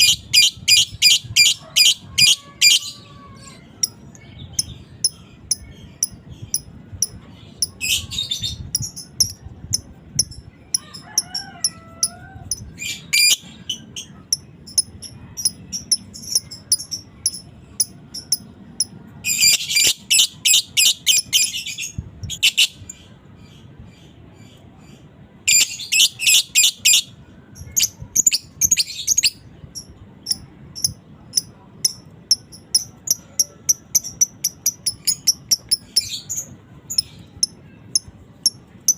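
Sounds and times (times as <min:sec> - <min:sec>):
lovebird chirping: 0:25.5 - 0:38.9
lovebird chattering trills: 0:27.7 - 0:38.9.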